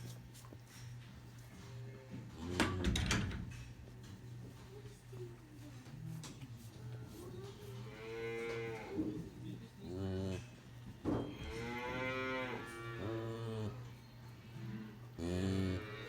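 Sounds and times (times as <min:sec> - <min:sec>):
cattle mooing: 0:07.9 - 0:09.1, 0:11.4 - 0:13.8, 0:14.7 - 0:16.0.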